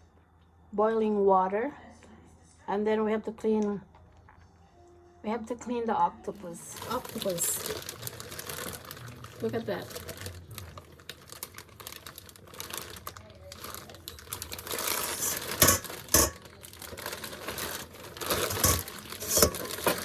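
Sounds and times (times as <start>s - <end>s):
plastic packaging crinkling: 6.6s - 20.0s.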